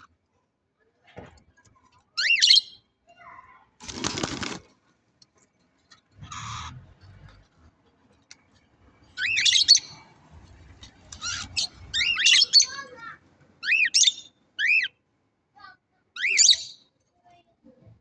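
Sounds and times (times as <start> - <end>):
noisy rustle: 3.8 - 4.8
budgerigars chirping: 6.2 - 6.7, 11.2 - 12.7.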